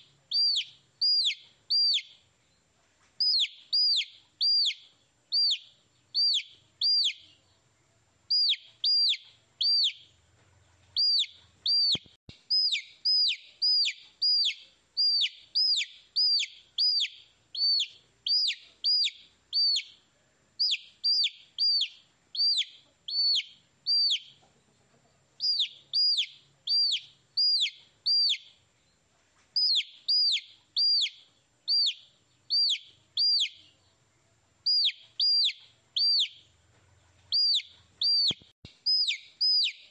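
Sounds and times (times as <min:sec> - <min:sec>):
baby chicks peeping: 0:00.0 - 0:39.9.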